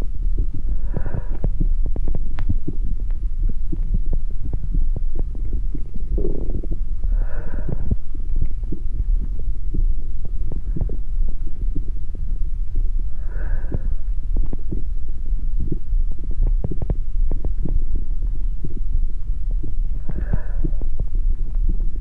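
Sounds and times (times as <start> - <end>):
amplified heartbeat throbbing: 0.0 - 22.0
crackling and clicking: 1.3 - 6.8.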